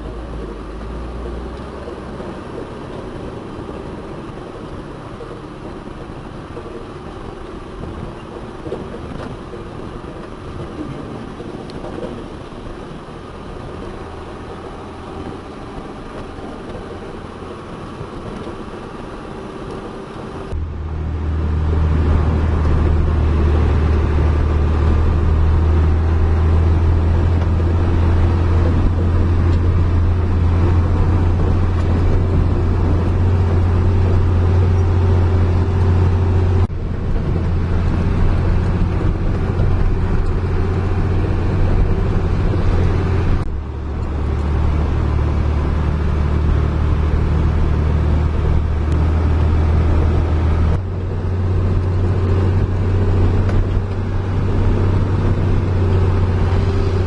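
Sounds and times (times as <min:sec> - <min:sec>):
diesel construction machinery running: 0:00.0 - 0:57.0
low drone of diesel engine: 0:00.0 - 0:57.0.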